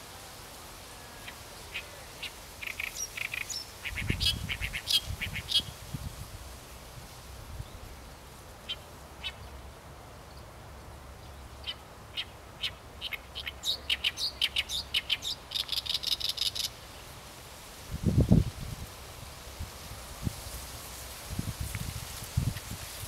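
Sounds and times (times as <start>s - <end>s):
warbler singing: 1.2s - 5.7s, 11.2s - 16.7s.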